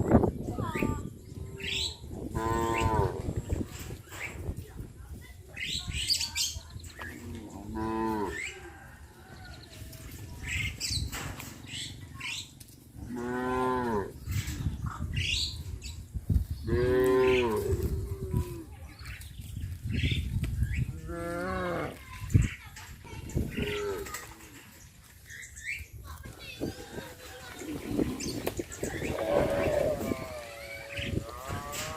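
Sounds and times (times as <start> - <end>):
cows mooing: 2.3 - 3.2, 7.2 - 8.5, 13.0 - 14.2, 16.7 - 18.4, 28.9 - 31.9.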